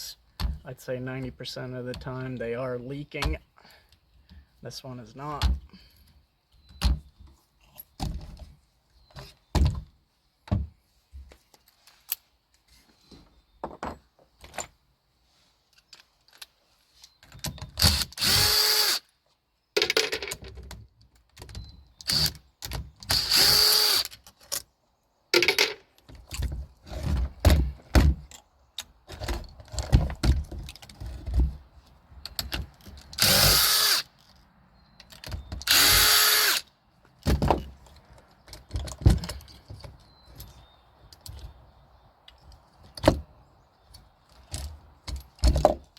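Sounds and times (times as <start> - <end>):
power drill bursts: 17.8 - 19.0, 23.1 - 24.1, 33.2 - 34.0, 35.6 - 36.6.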